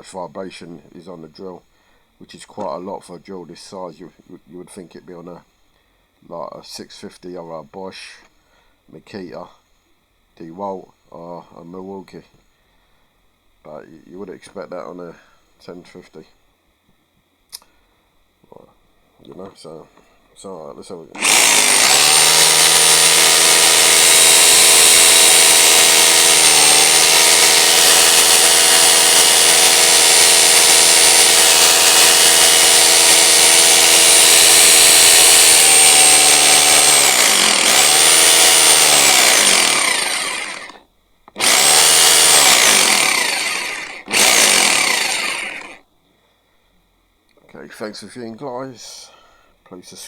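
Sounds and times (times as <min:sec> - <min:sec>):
rotary hammer drill running: 0:21.2 - 0:45.8.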